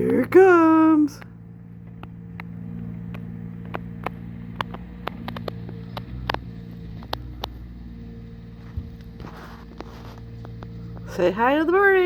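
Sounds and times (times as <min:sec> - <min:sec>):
sharp clicks and clanks: 0:00.0 - 0:07.8
vehicle engine droning: 0:00.0 - 0:12.0.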